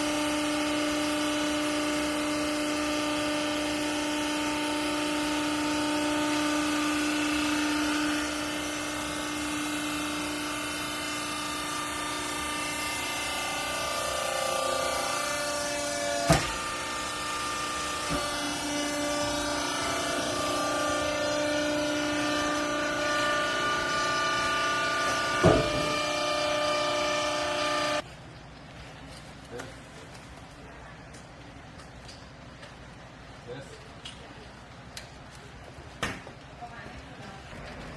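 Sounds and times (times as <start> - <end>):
hydraulic power unit whine: 0.0 - 28.1.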